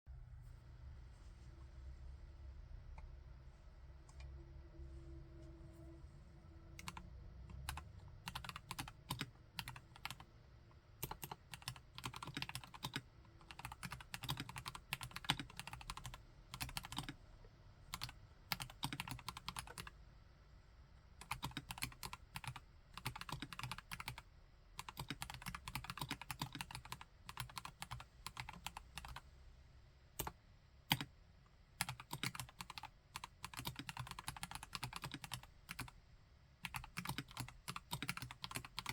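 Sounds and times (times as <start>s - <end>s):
mechanical keyboard typing: 6.8s - 10.3s, 11.0s - 17.2s, 17.9s - 19.9s, 21.2s - 24.2s, 24.8s - 29.2s, 30.2s - 31.1s, 31.8s - 36.0s, 36.6s - 38.9s.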